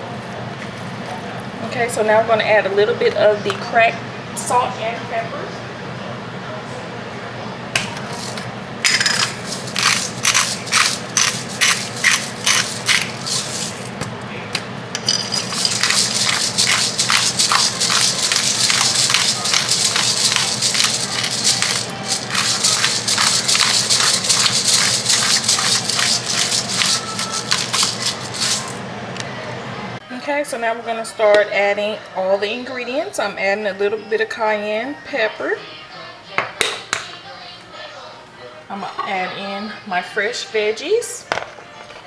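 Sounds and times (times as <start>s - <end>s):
pepper grinder crunching: 8.1s - 14.0s, 15.0s - 28.8s.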